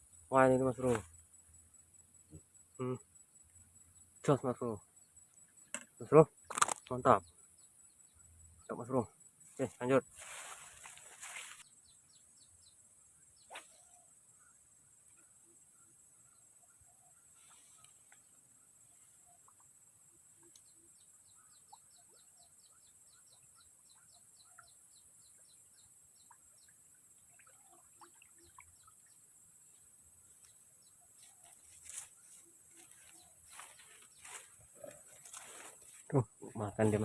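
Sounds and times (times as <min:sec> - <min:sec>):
insect hiss: 0:00.0 - 0:37.0
bird chirping: 0:15.2 - 0:37.0.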